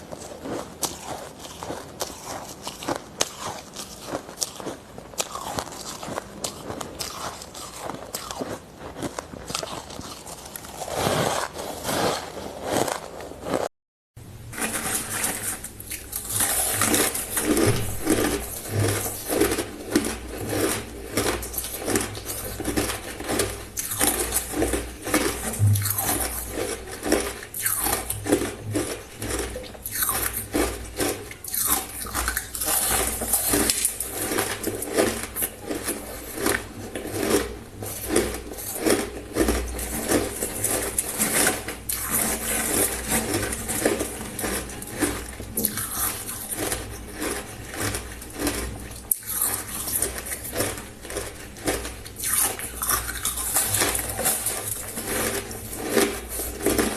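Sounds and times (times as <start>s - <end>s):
person chewing ice: 0.0s - 13.7s, 14.5s - 56.9s.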